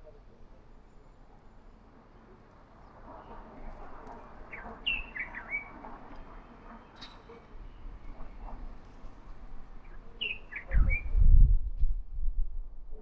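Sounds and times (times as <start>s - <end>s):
birds chirping: 4.4s - 5.8s.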